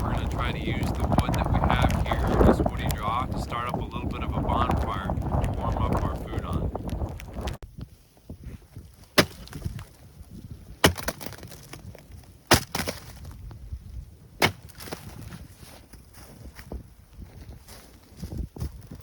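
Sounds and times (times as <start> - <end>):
dry wood cracking: 0.0 - 7.6, 9.0 - 13.6, 14.4 - 15.3.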